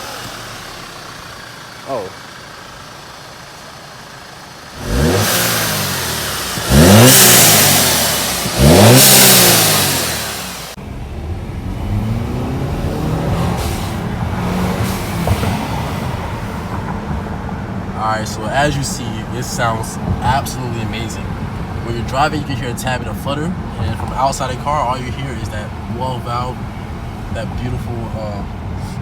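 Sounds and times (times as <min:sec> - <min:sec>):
turbo valve hissing: 0:00.0 - 0:10.8
car engine revving: 0:00.0 - 0:29.0.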